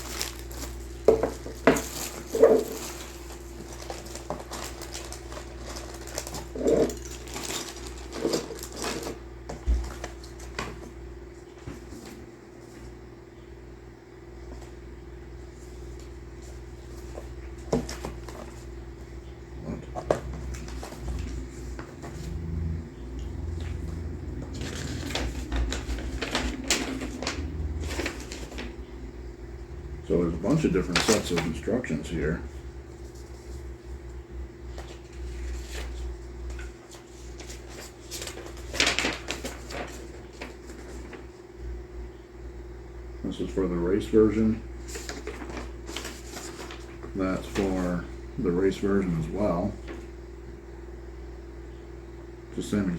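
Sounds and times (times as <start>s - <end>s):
paper rustling and crinkling: 0.0s - 13.0s, 15.5s - 18.8s, 19.7s - 22.6s, 23.4s - 28.9s, 30.1s - 33.8s, 34.7s - 41.4s, 44.8s - 48.0s
steady low hum: 0.0s - 52.9s.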